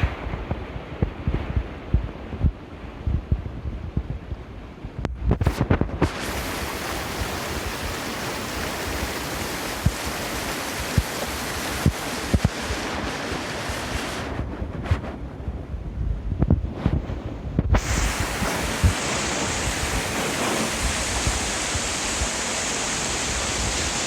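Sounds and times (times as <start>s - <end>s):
wind buffeting microphone: 0.0s - 24.0s
rushing stream water: 6.0s - 14.4s, 17.8s - 24.0s.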